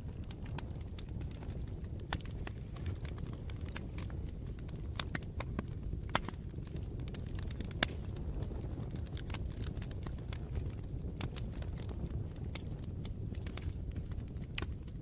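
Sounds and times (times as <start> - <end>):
campfire crackling and popping: 0.0 - 15.0.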